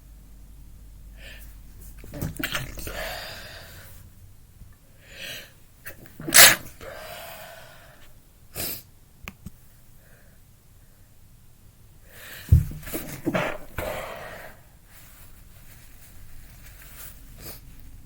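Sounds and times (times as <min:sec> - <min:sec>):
woman breathing: 0:02.7 - 0:04.1, 0:04.9 - 0:05.6, 0:06.8 - 0:08.1, 0:12.0 - 0:15.0
woman sneezing: 0:06.3 - 0:07.0.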